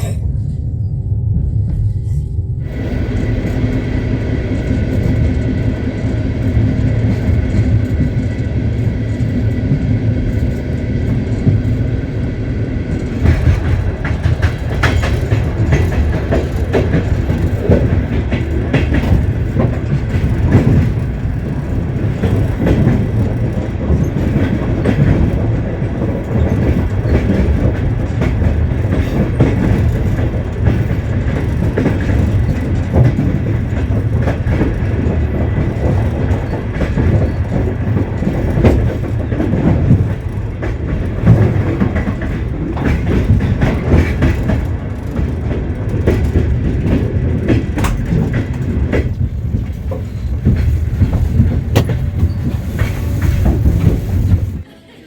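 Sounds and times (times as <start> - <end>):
train wheels rumbling on rails: 0.0 - 55.0
wheels knocking and clattering: 12.9 - 54.7.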